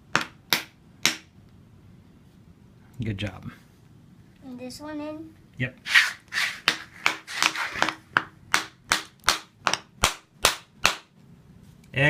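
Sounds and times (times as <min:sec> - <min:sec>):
hammer driving nail into wood: 0:00.1 - 0:01.3, 0:06.6 - 0:11.1.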